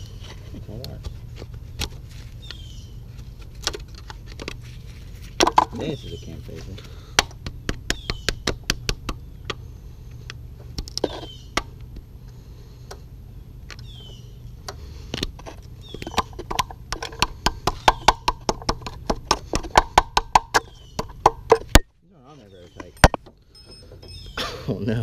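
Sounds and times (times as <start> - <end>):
hand tools tapping on metal: 15.8 - 21.9
high falling chirps: 22.3 - 24.7.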